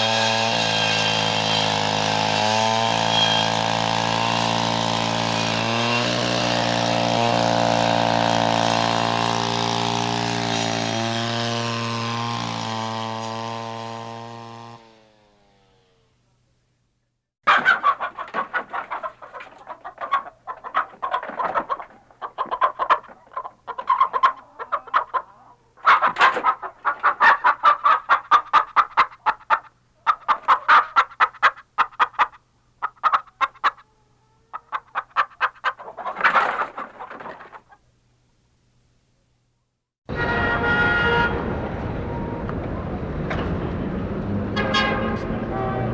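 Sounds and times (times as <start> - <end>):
chickens clucking: 17.5 - 37.8.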